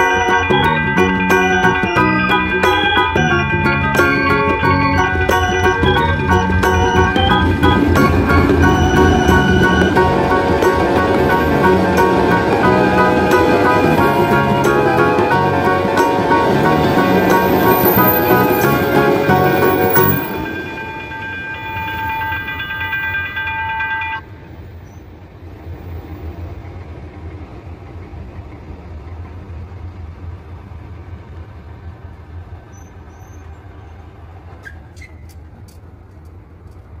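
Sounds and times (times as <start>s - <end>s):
held high tone: 0.0s - 24.3s
train rumbling: 0.0s - 37.0s.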